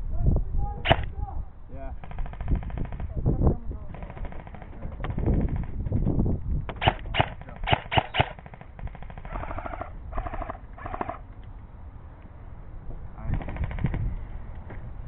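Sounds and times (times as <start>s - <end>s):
airsoft gun single shots: 0.8s - 1.1s, 6.7s - 11.2s
airsoft gun automatic bursts: 2.0s - 3.1s, 3.9s - 6.0s, 6.8s - 11.2s.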